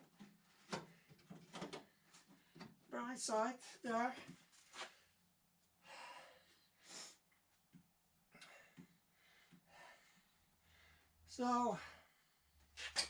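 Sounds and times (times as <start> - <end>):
person breathing faintly: 5.8 - 7.2.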